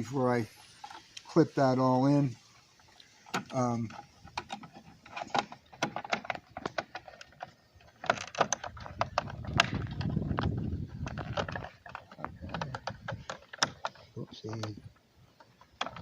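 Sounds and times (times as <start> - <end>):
plastic parts clicking and rattling: 3.2 - 16.0.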